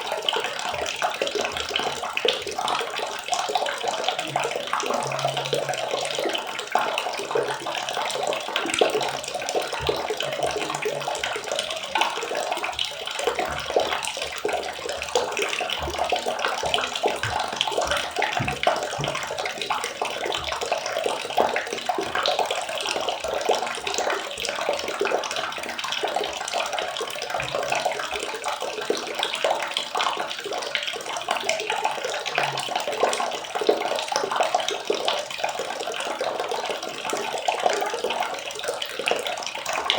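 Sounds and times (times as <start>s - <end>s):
water running and splashing: 0.0s - 39.9s
soft low thumps: 13.4s - 22.2s.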